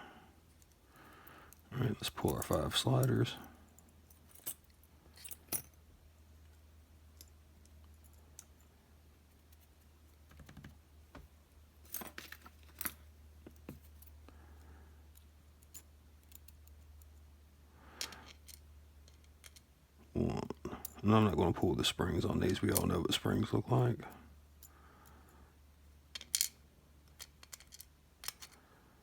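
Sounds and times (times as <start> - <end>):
lock parts clicking: 26.2 - 28.6.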